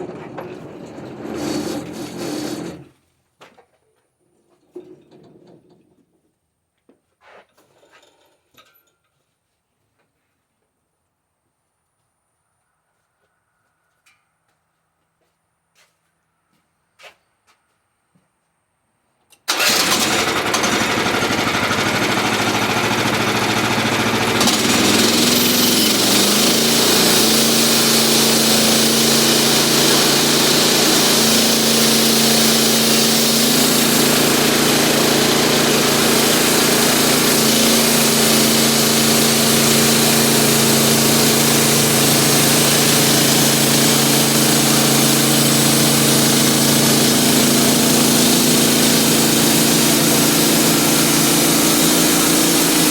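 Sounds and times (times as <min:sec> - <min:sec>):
sawmill engine running: 0:00.0 - 0:02.9, 0:19.5 - 0:52.9.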